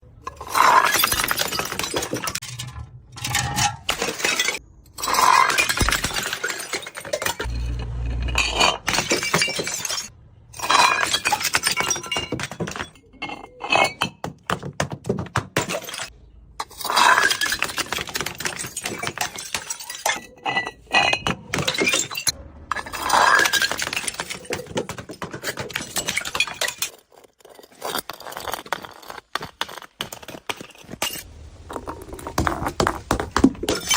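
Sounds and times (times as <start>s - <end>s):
glass bottles shattering: 0.2s - 31.3s, 32.0s - 33.9s
glass shards tinkling: 16.8s - 28.0s.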